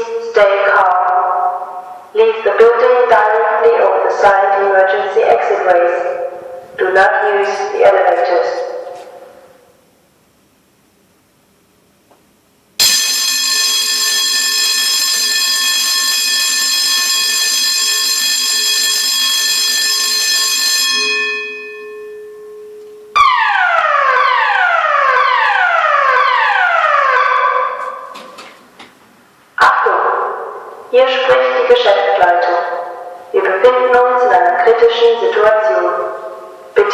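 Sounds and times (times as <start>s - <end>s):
falling alarm tone: 12.8s - 28.2s
steady alarm tone: 12.8s - 28.4s.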